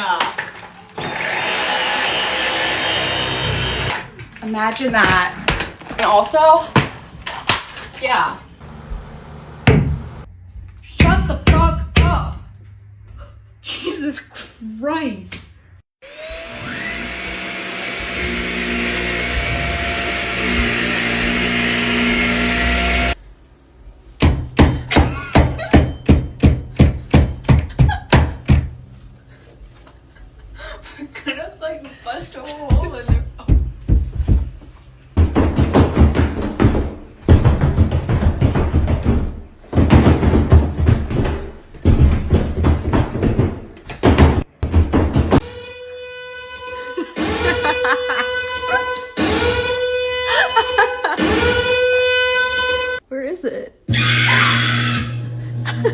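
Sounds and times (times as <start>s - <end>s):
vacuum cleaner motor whirring: 1.0s - 4.0s, 16.0s - 23.2s, 53.9s - 55.9s
deep thumps and bangs: 8.7s - 10.3s, 24.2s - 28.9s.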